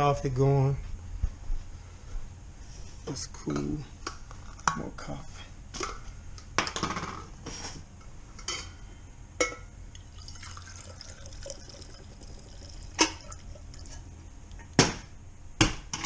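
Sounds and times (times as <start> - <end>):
dishes clinking: 9.4 - 9.7
coffee pouring into mug: 9.9 - 14.1.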